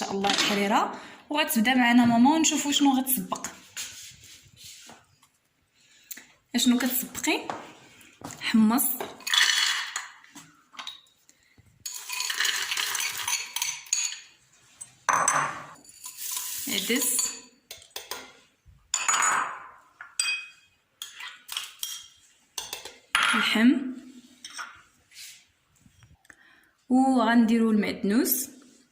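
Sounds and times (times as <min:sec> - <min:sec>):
dried legumes rattling into pot: 0:11.8 - 0:13.6
spoon and dishes clinking: 0:17.0 - 0:23.5.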